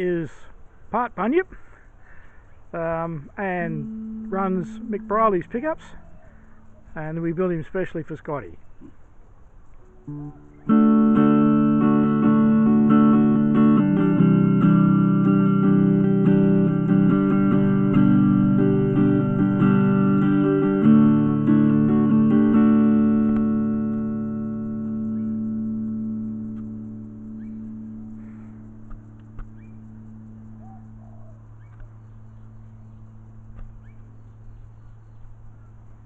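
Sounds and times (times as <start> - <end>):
electric guitar strumming chords: 2.8 - 7.5, 9.9 - 30.6.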